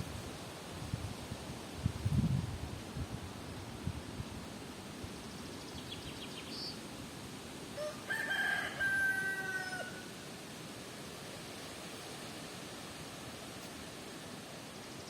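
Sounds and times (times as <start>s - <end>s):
wind rustling trees: 0.0s - 15.0s
rooster crowing: 7.8s - 10.2s.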